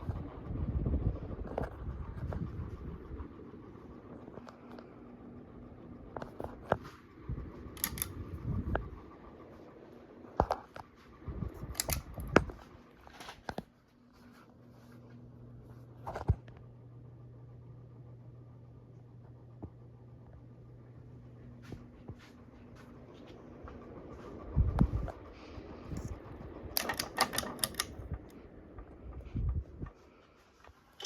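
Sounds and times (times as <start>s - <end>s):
ceiling fan motor hum: 0.0s - 31.0s.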